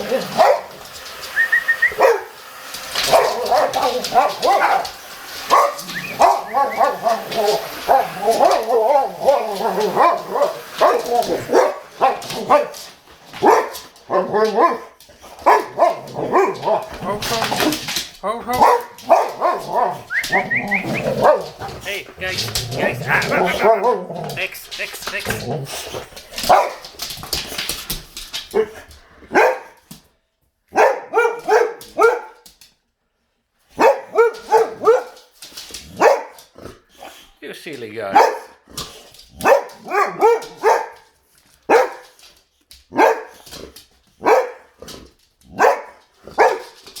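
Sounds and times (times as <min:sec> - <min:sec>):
dog barking and whining: 0:00.0 - 0:17.9, 0:18.5 - 0:24.5, 0:25.1 - 0:27.0, 0:28.5 - 0:29.8, 0:30.7 - 0:32.4, 0:33.7 - 0:36.4, 0:38.1 - 0:41.0, 0:41.6 - 0:42.2, 0:42.9 - 0:43.6, 0:44.2 - 0:44.7, 0:45.5 - 0:46.8.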